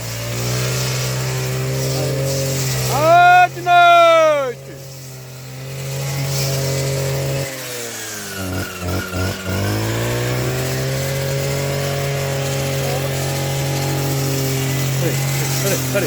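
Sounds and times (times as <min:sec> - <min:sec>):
brushcutter engine running: 0:00.0 - 0:16.0.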